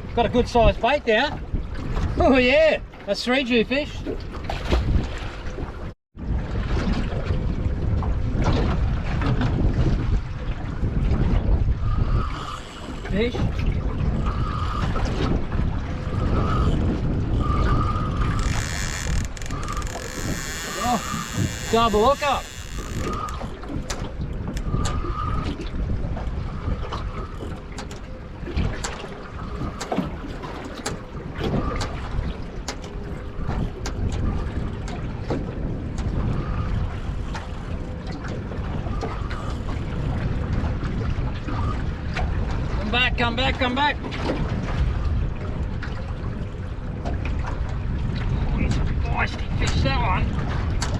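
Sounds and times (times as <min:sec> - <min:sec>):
wind buffeting microphone: 0:00.0 - 0:50.9
fishing reel drag buzzing: 0:12.0 - 0:13.1, 0:17.4 - 0:23.4.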